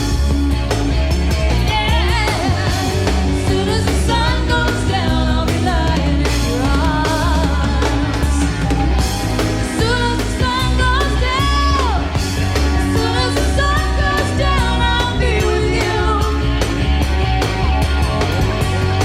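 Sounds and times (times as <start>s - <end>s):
live pop-rock band playing: 0.0s - 19.0s
woman singing: 1.4s - 8.6s, 9.6s - 12.2s, 12.8s - 16.7s.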